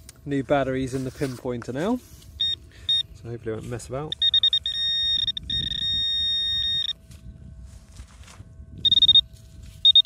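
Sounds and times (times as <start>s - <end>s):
pinpointer probe beeping: 2.4s - 3.2s, 4.0s - 7.1s, 8.7s - 10.0s
steady electronic tone: 4.0s - 7.9s, 8.5s - 10.0s.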